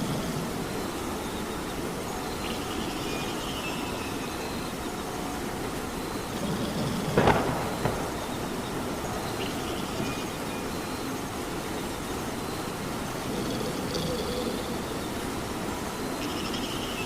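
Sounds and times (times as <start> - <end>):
steady rain falling: 0.0 - 17.0
loud crack: 7.2 - 8.4.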